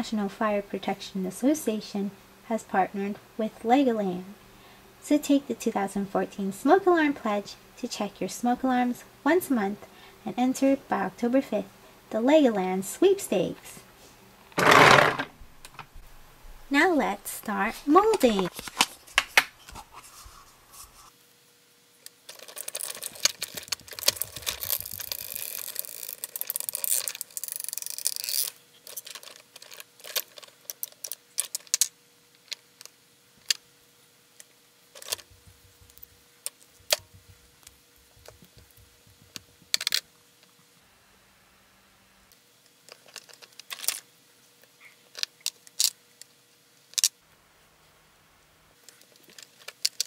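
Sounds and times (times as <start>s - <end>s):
rustling and scraping: 14.0s - 16.0s, 17.5s - 21.2s, 22.3s - 31.7s, 34.9s - 40.6s
plastic parts clicking: 38.2s - 40.0s, 49.0s - 50.0s.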